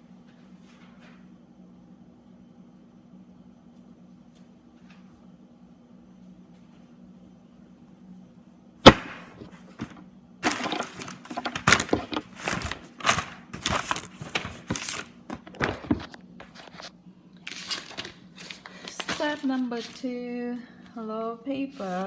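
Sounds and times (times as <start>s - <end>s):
plastic tray clacking: 9.8s - 16.0s
plastic tray rattling and scraping: 9.8s - 16.8s.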